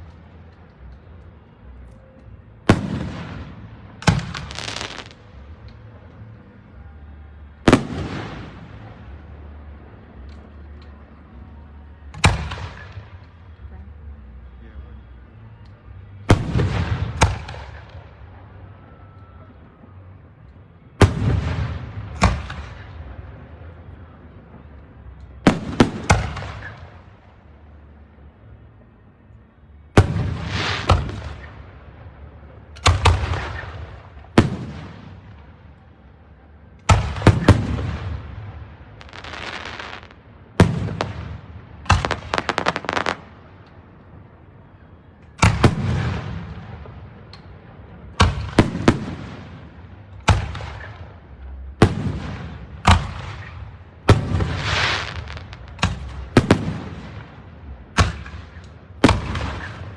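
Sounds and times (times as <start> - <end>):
fireworks bursting with bangs: 0.0 - 6.6, 7.4 - 11.5, 16.2 - 18.7, 19.4 - 27.6, 30.0 - 44.6, 45.3 - 59.9
rapid fireworks pops: 36.9 - 43.3, 45.4 - 59.9.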